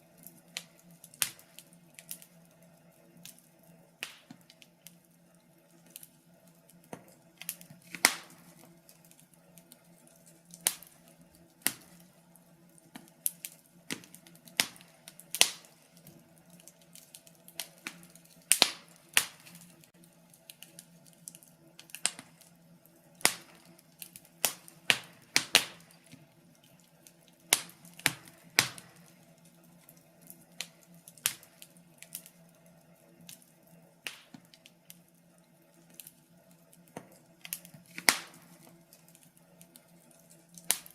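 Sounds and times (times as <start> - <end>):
wood fire crackling: 0.0 - 40.9.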